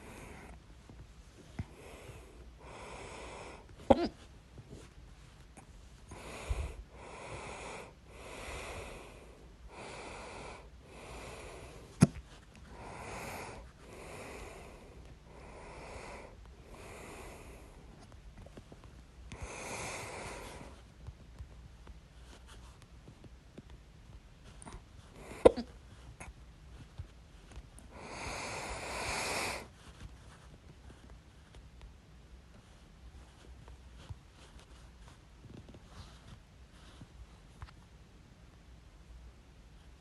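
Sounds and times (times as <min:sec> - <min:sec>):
person breathing slowly: 0:01.4 - 0:03.8, 0:06.1 - 0:12.0, 0:12.6 - 0:18.1, 0:19.3 - 0:20.9, 0:27.9 - 0:30.0.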